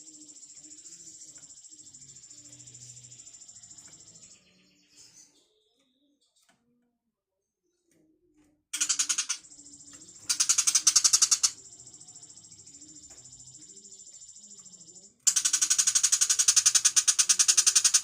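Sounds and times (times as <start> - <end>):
bird harsh chattering call: 8.8 - 9.4, 10.1 - 11.6, 15.3 - 18.0.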